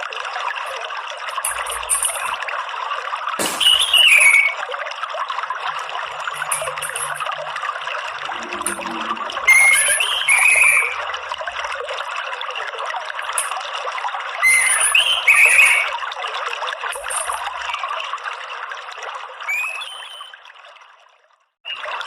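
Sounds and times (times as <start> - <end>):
water trickling: 0.0 - 22.0
thrush chirping: 5.8 - 11.7.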